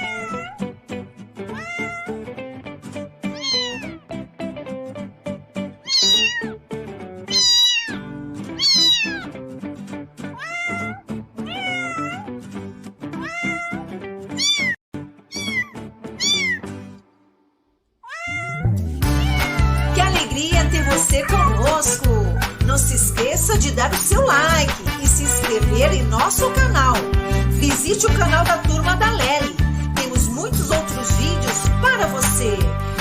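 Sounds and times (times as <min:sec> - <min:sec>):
cats meowing: 0:00.0 - 0:00.7, 0:01.4 - 0:02.3, 0:03.3 - 0:04.0, 0:05.8 - 0:06.6, 0:07.3 - 0:09.4, 0:10.3 - 0:12.4, 0:13.1 - 0:16.7, 0:18.0 - 0:22.9, 0:23.9 - 0:24.6
background music: 0:18.6 - 0:33.0.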